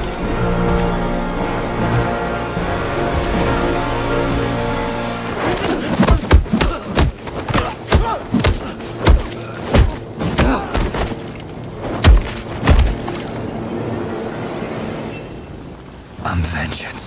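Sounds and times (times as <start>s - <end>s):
people grunting: 5.4s - 11.3s
heavy thumps and thuds: 6.0s - 11.2s, 11.9s - 13.1s.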